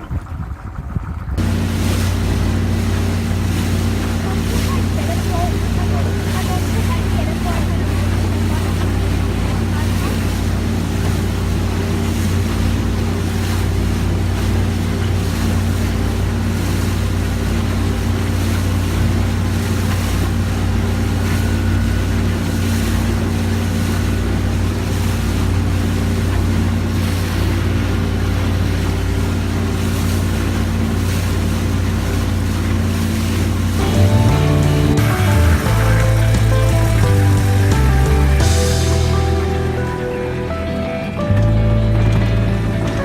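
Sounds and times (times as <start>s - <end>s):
wind noise: 0.0s - 4.1s
motorboat engine droning: 0.0s - 43.0s
water noise: 0.0s - 43.0s.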